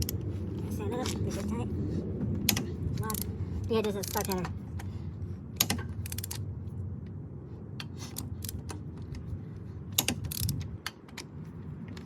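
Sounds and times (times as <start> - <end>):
torque wrench clicking: 2.5 - 3.3, 4.0 - 4.5, 5.6 - 6.4, 9.9 - 11.3.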